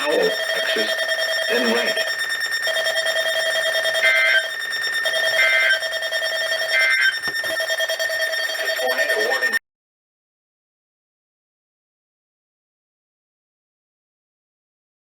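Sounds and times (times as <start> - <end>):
electronic two-tone screeches: 0.0 - 9.6
steady electronic whine: 0.0 - 9.6.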